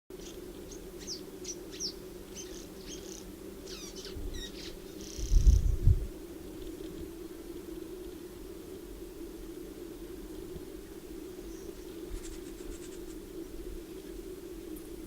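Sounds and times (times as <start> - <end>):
swallows twittering: 0.2 - 5.8.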